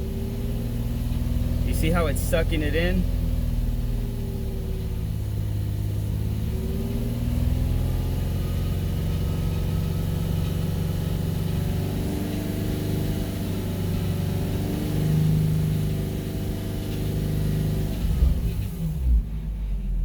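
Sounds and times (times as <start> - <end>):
car engine running: 0.0 - 20.0.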